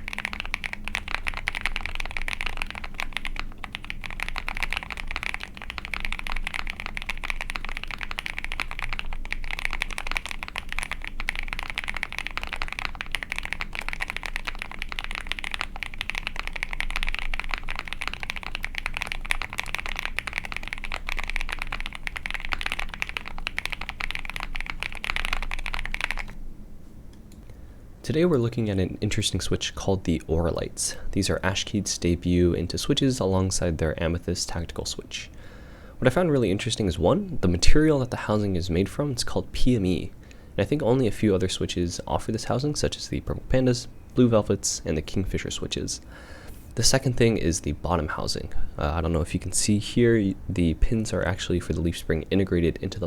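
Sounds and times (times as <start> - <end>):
fast mechanical keyboard typing: 0.0 - 26.4, 50.8 - 53.0.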